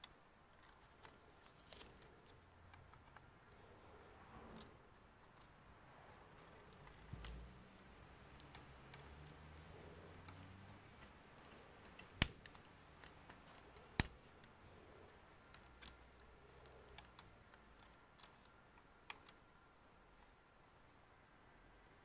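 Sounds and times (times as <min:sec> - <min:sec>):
small clicks and taps: 0:08.3 - 0:19.5.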